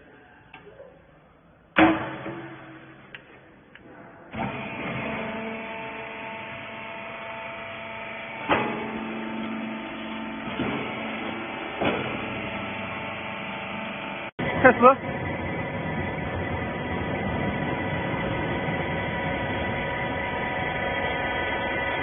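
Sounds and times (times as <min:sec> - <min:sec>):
loud metallic bang: 0:01.8 - 0:03.1
hydraulic machine humming drone: 0:04.3 - 0:22.0.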